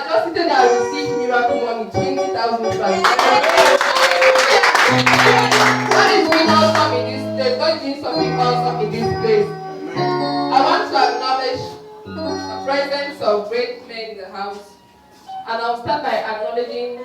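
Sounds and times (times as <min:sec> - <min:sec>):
low keyboard notes: 0:00.0 - 0:17.0
voices singing: 0:00.1 - 0:13.5.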